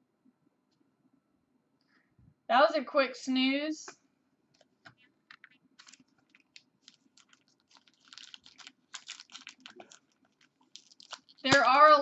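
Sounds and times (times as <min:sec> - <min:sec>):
trading cards and wrappers crinkling: 0:05.3 - 0:12.0.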